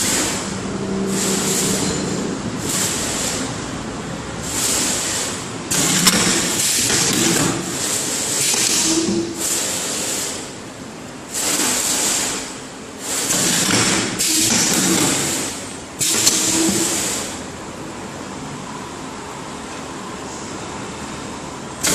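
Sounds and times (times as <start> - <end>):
machine hissing bursts: 0.0 - 3.6, 4.4 - 10.6, 11.3 - 17.6
sharp machine clicks: 13.2 - 17.4.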